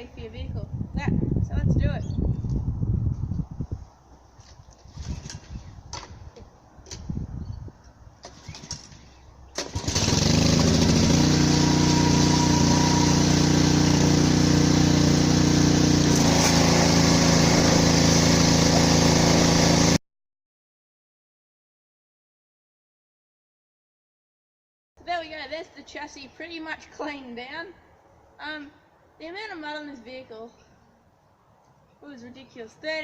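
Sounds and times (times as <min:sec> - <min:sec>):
pressure washer engine running: 0:09.6 - 0:20.0.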